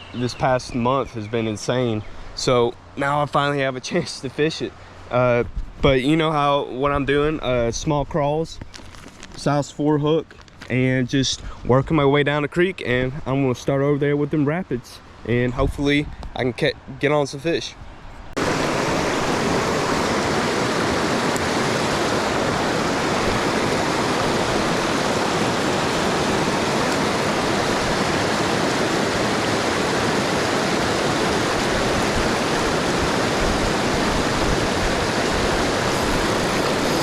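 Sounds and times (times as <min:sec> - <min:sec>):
creek water rushing over rapids: 0:18.4 - 0:37.0.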